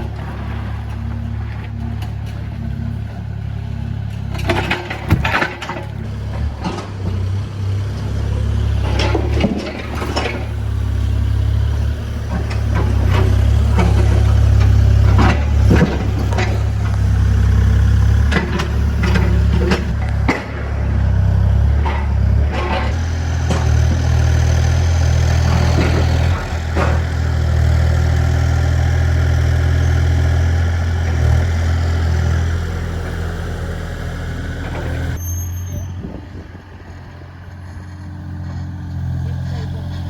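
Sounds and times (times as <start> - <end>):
clanks of concrete and steel: 0.0 - 36.6
diesel engine running: 0.0 - 40.0.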